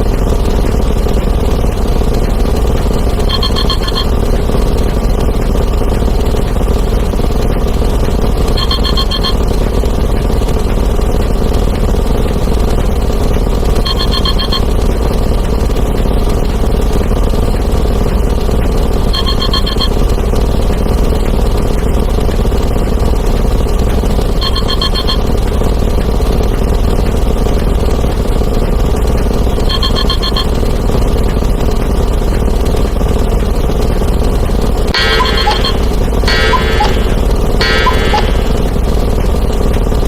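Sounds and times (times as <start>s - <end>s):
alarm clock ringing: 3.3s - 4.1s, 8.6s - 9.4s, 35.0s - 38.9s
short ringing tone: 3.3s - 4.2s, 8.6s - 9.4s, 13.9s - 14.6s, 24.4s - 25.2s, 35.0s - 39.0s.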